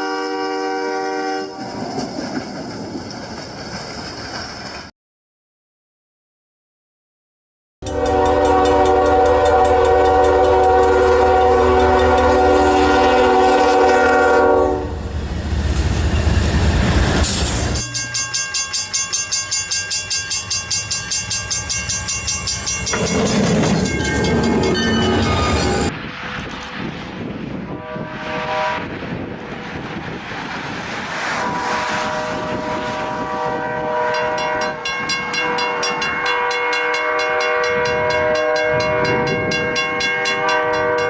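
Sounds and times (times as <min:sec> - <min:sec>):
train horn: 0:00.0 - 0:01.8, 0:07.8 - 0:15.0, 0:27.7 - 0:29.0, 0:31.4 - 0:41.0
train rumbling by: 0:00.0 - 0:04.9, 0:07.8 - 0:41.0.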